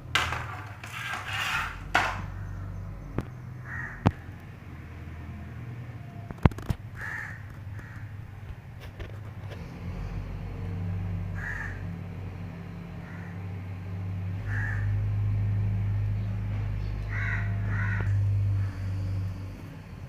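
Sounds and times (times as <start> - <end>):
steady low hum: 0.0 - 20.0
harsh caw-like bird calls: 3.6 - 4.3, 7.0 - 8.2, 11.3 - 11.9, 12.9 - 13.5, 14.4 - 15.1, 16.8 - 19.6.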